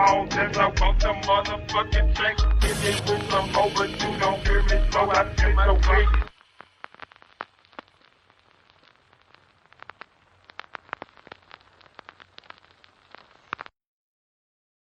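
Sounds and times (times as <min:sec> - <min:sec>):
faint crackling clicks and pops: 0:05.1 - 0:13.8
light hiss: 0:06.2 - 0:13.7.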